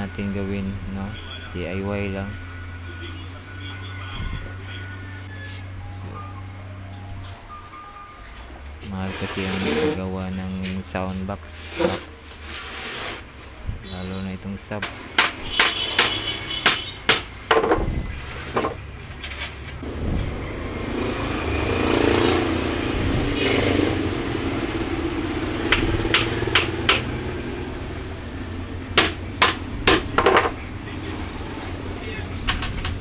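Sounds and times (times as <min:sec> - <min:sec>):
hammer knocking on wooden box: 0:29.0 - 0:30.5.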